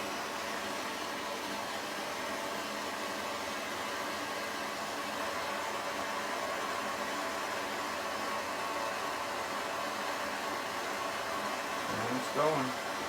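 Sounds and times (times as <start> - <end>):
gas torch flame hissing: 11.8 - 12.7.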